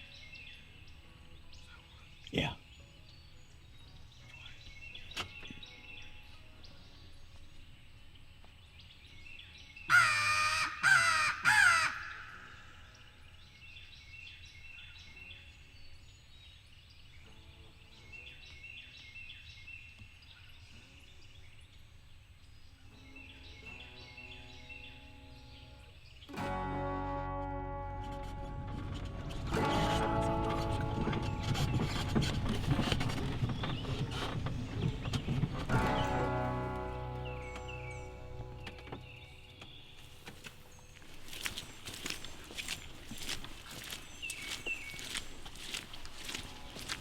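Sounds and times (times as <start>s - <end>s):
songbirds singing: 0.0s - 26.4s, 29.3s - 47.0s
crow cawing: 9.9s - 12.8s.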